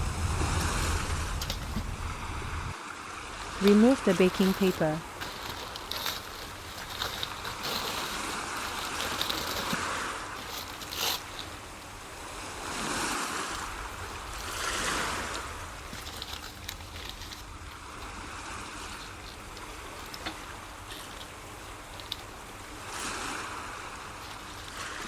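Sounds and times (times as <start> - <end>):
baking paper crinkling: 3.4 - 11.9, 13.6 - 25.0.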